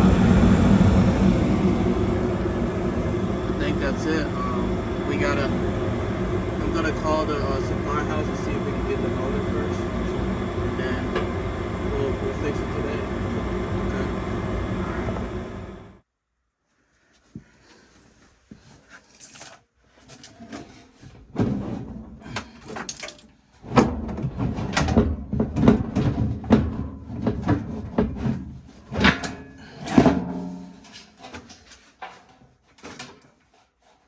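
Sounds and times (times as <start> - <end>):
low hum: 0.0 - 16.0.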